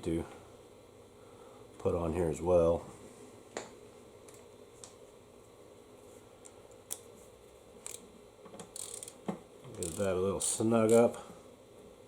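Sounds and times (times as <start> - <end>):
small metal parts clicking: 8.7 - 11.2.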